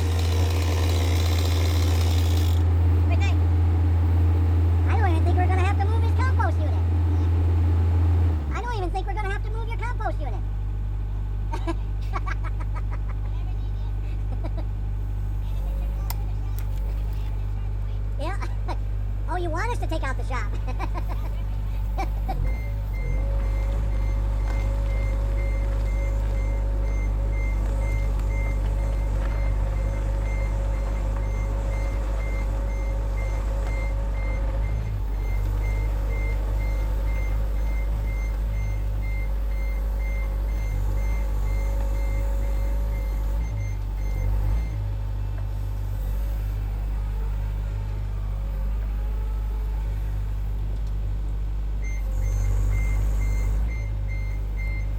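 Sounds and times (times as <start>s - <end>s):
diesel engine running: 0.0s - 54.9s
backup alarm beeping: 22.3s - 44.9s, 51.8s - 54.9s.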